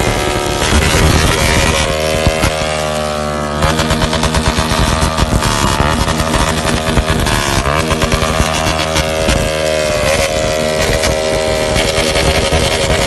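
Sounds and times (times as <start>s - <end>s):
motorcycle engine on rev limiter: 0.0s - 13.0s.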